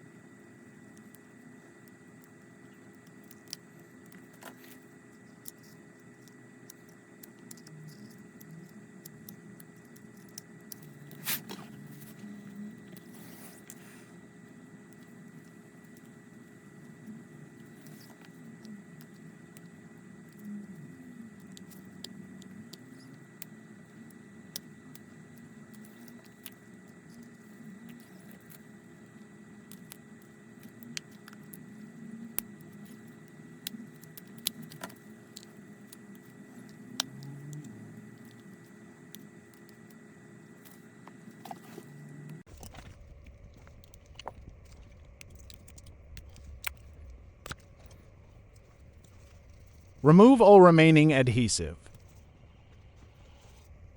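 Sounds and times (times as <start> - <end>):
low electrical hum: 0.0 - 42.6.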